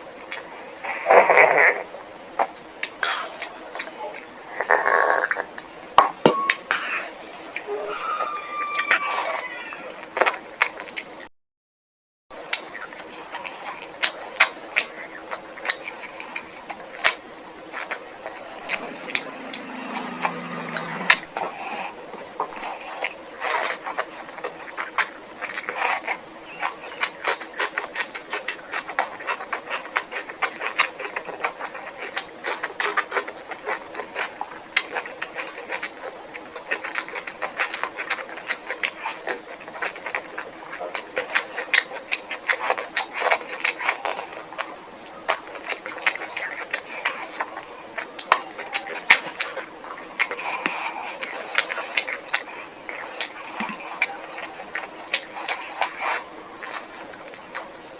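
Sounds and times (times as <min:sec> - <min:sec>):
chewing and lip smacking: 0:00.0 - 0:05.7, 0:06.8 - 0:11.3, 0:12.4 - 0:57.9
wet clicks and crunches: 0:12.4 - 0:57.9.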